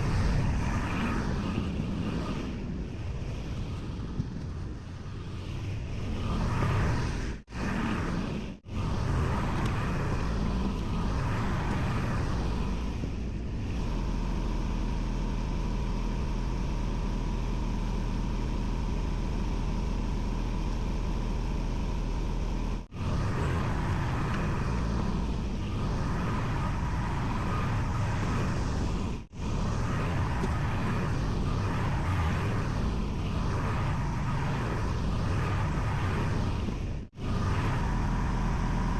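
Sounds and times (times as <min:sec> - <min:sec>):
tractor diesel engine under load: 0:13.6 - 0:25.5.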